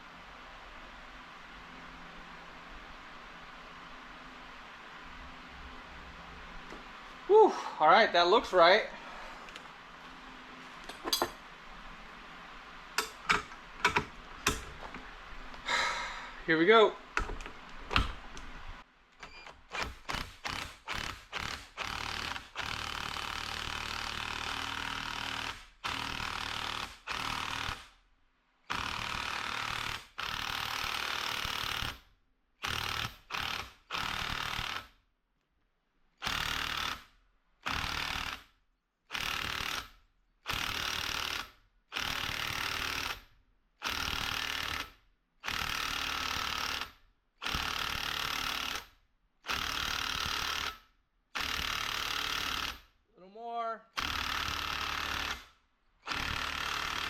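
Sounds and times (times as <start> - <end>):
impact tool bursts: 13.0 - 14.9, 19.2 - 28.0, 28.7 - 32.0, 32.6 - 34.9, 36.2 - 38.5, 39.1 - 39.9, 40.5 - 43.2, 43.8 - 48.9, 49.5 - 50.8, 51.4 - 52.9, 54.0 - 57.0.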